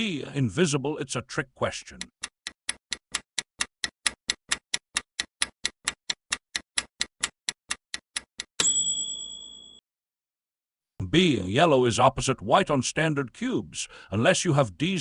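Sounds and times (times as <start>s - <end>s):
timer ticking fast: 2.0s - 8.5s
ringing chime: 8.6s - 9.8s.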